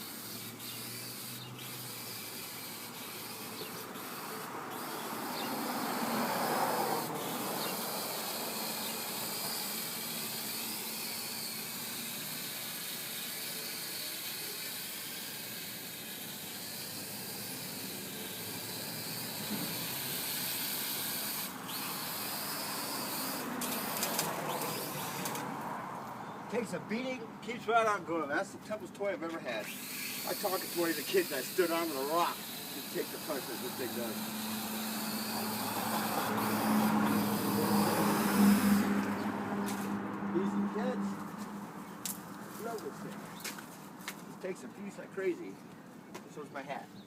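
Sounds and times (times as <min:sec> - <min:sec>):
multicopter propellers whirring: 0:29.6 - 0:39.8.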